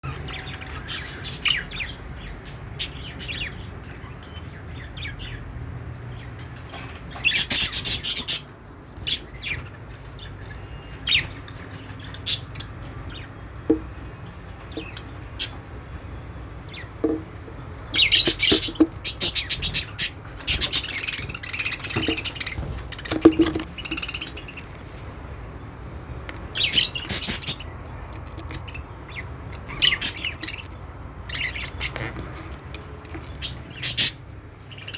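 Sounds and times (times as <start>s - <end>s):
budgerigars chirping and chattering: 0.0s - 34.9s.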